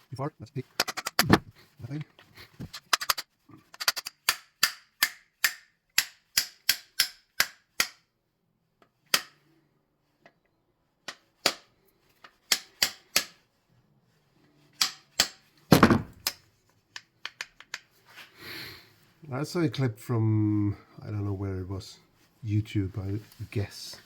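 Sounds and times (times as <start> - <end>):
sharp metal clicks: 2.7 - 8.0.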